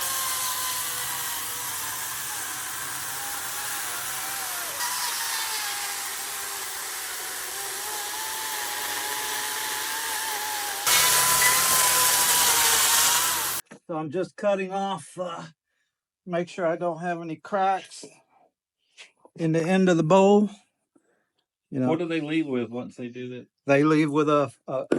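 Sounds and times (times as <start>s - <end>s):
chainsaw cutting log: 0.0s - 13.6s.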